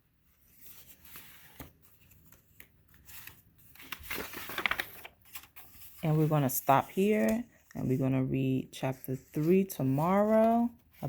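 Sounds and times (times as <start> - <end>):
rustling crinkling handling noise: 0.4 - 8.2.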